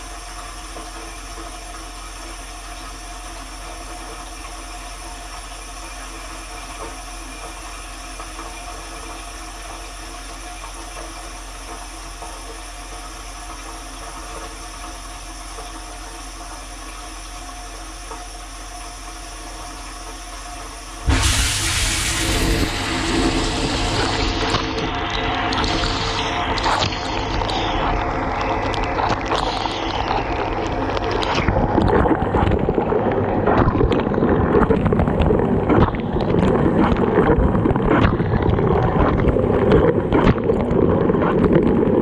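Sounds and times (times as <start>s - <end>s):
dishwasher running: 21.1s - 34.6s.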